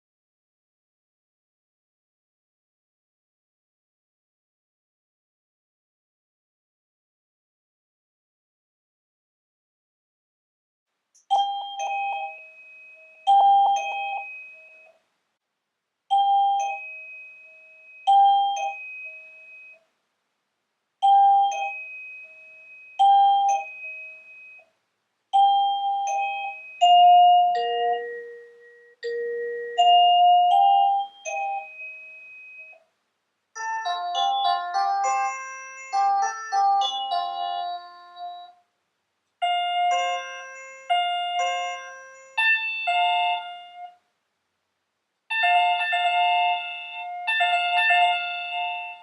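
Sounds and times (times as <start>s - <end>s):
electronic ding-dong chime: 11.3s - 15.0s, 16.1s - 19.9s, 21.0s - 24.7s, 25.4s - 32.8s, 33.6s - 38.6s, 39.4s - 44.0s, 45.3s - 49.0s
electronic chime tune: 21.0s - 24.7s, 25.4s - 32.8s, 33.6s - 38.6s.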